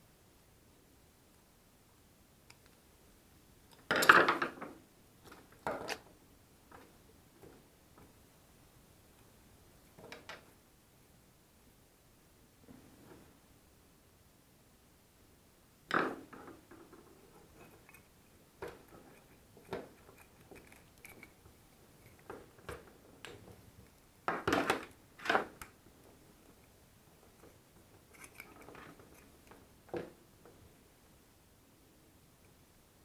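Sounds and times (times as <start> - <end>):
clattering parts: 16.0 - 22.8, 27.3 - 30.1
small tool clicks and scrapes: 17.4 - 21.4, 27.4 - 29.6.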